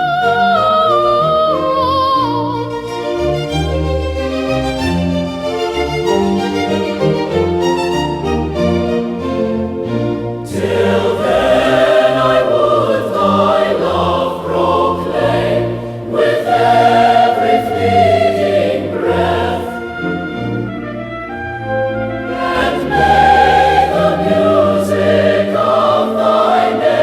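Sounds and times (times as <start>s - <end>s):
orchestral strings: 0.0s - 27.0s
choir singing a hymn: 10.4s - 21.0s, 21.6s - 27.0s.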